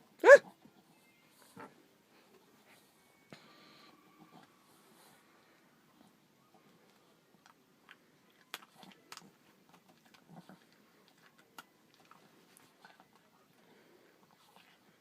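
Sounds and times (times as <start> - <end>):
dog chewing a treat: 6.9 - 14.9.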